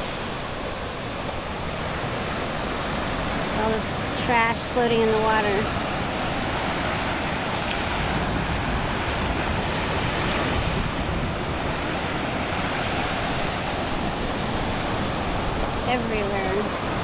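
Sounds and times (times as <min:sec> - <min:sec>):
surf washing on a beach: 0:00.0 - 0:17.0
wind buffeting microphone: 0:00.0 - 0:17.0.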